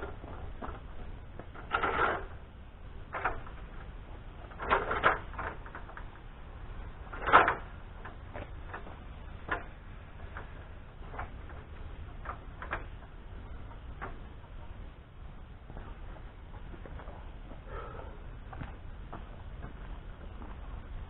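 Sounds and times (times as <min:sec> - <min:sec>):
irregular knocks and clicks: 0:07.1 - 0:14.8.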